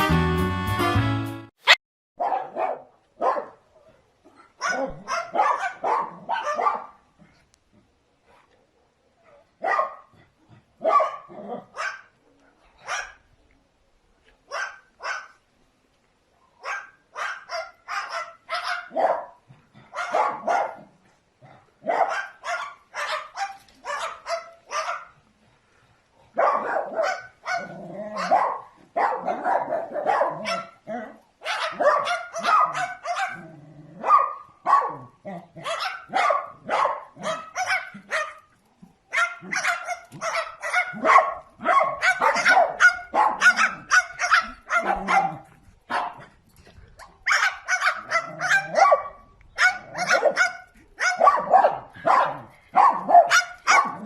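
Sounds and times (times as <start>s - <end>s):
short dog-like barks: 2.2s - 3.6s, 4.5s - 7.0s, 8.3s - 10.1s, 10.8s - 12.2s, 12.8s - 13.3s, 14.5s - 15.4s, 16.6s - 20.9s, 21.5s - 25.2s, 26.3s - 38.5s, 39.1s - 46.3s, 47.2s - 54.0s.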